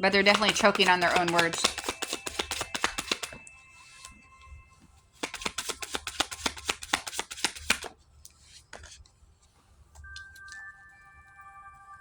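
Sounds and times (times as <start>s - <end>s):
cards being shuffled: 0.1s - 4.1s, 5.2s - 9.0s.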